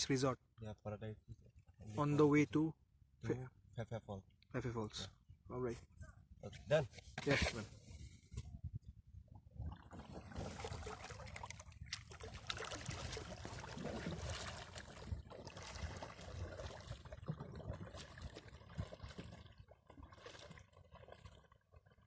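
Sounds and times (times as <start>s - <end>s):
small drips and knocks: 8.3s - 22.0s
water trickling and splashing: 9.3s - 22.0s.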